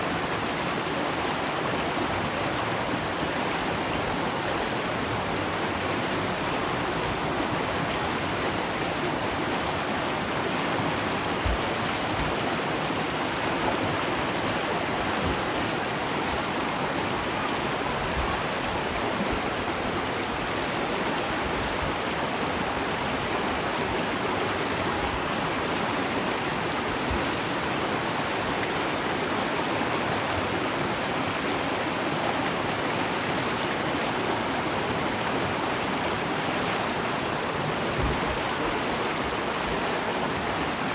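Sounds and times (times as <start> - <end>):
river water rushing: 0.0 - 40.9.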